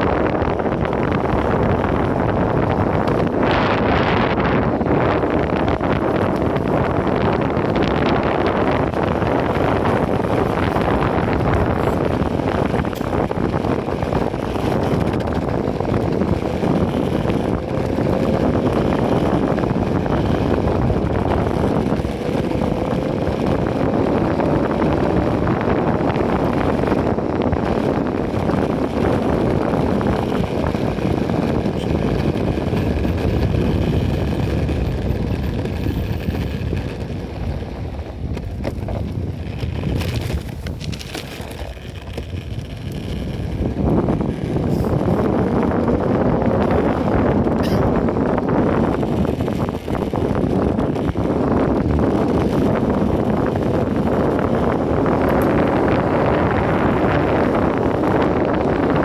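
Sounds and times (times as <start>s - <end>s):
wind buffeting microphone: 0.0s - 59.0s.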